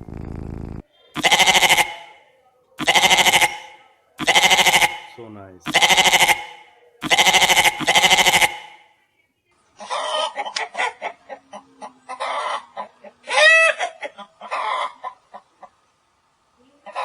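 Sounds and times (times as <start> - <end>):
sheep bleating: 1.2 - 2.1, 2.8 - 8.8
drawn-out chicken call: 2.8 - 8.8, 12.1 - 15.5
chickens clucking: 9.8 - 15.8.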